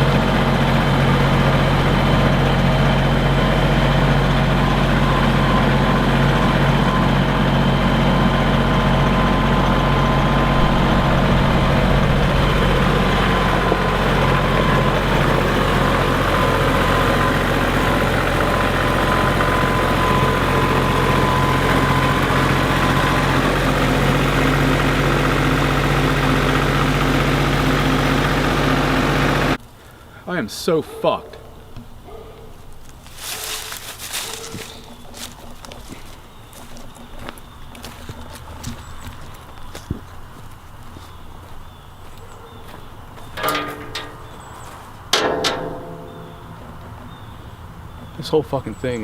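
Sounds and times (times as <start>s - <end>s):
woodchipper engine running: 0.0s - 30.1s, 32.8s - 49.0s.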